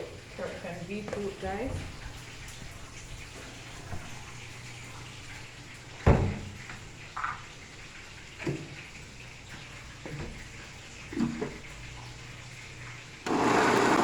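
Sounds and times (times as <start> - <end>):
knocks on kitchen counter: 6.0 - 6.5.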